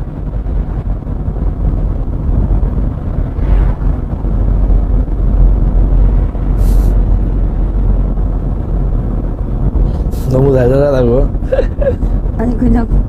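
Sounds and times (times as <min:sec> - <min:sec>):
road and engine rumble in car: 0:00.0 - 0:13.0
brief hiss: 0:06.6 - 0:07.0.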